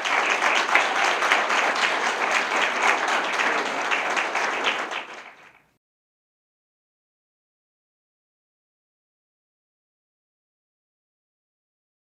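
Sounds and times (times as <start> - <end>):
audience applauding: 0.0 - 5.7.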